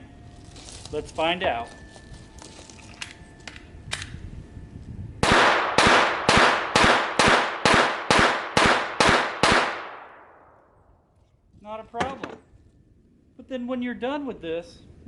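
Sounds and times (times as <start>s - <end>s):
pistol shots: 5.2s - 10.3s.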